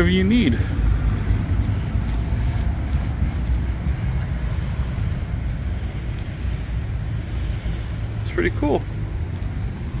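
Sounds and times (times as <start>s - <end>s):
low rumbling street noise: 0.0s - 10.0s.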